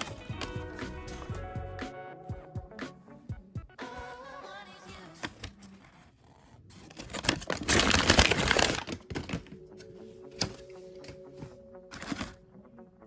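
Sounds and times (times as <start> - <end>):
packaging crinkling and tearing: 6.8 - 9.4.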